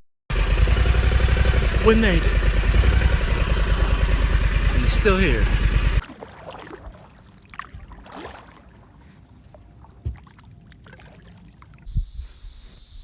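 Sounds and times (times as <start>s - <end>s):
paddle in water: 0.4s - 12.1s
thump on kayak: 10.0s - 10.4s
steady hiss: 11.9s - 13.0s.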